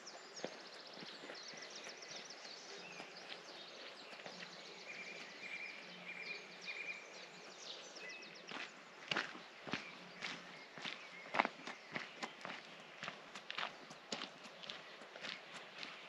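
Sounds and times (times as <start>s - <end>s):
small birds trilling: 0.0s - 16.0s.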